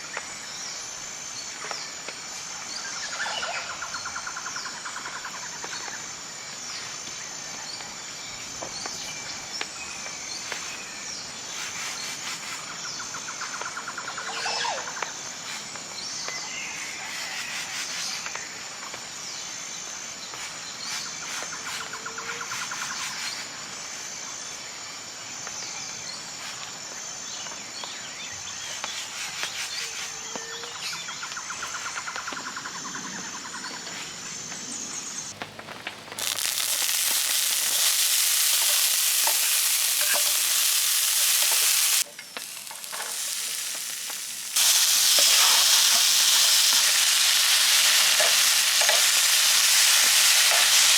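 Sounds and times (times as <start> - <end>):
birds calling: 36.2 - 50.9
insects whining: 36.2 - 50.9
pulsing insect trill: 36.2 - 50.9.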